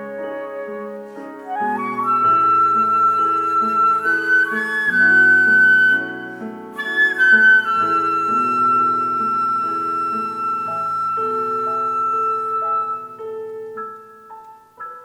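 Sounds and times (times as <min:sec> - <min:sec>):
flute playing slow melody: 0:00.0 - 0:13.6
lower accompaniment: 0:00.0 - 0:14.9.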